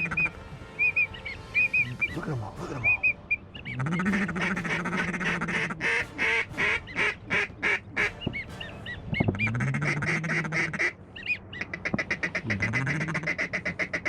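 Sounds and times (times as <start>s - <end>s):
high whistles: 0.0s - 2.2s
long low drone: 0.0s - 11.1s
duck quacking: 0.0s - 14.0s.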